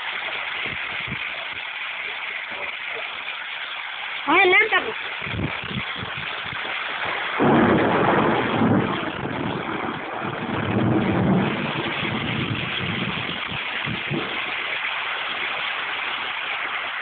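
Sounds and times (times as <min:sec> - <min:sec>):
heavy rain pouring: 0:00.0 - 0:17.0
runoff water rushing: 0:00.0 - 0:17.0.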